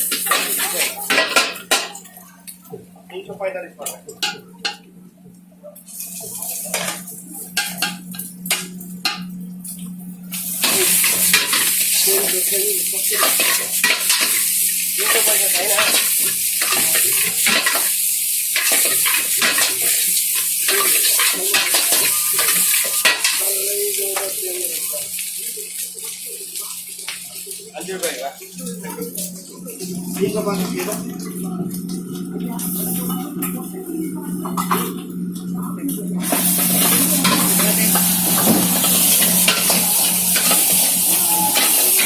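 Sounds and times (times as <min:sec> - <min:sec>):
food sizzling in hot oil: 0:00.0 - 0:02.1, 0:05.9 - 0:31.1, 0:36.1 - 0:42.0.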